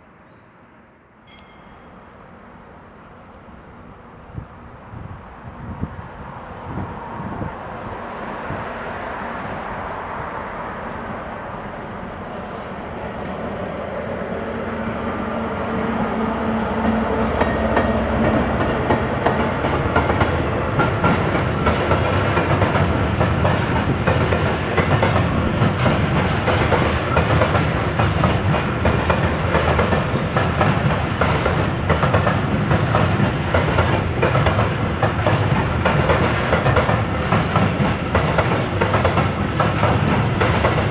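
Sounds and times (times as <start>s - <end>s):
train passing: 0.0s - 40.9s
train wheels clattering over rails: 16.8s - 40.9s.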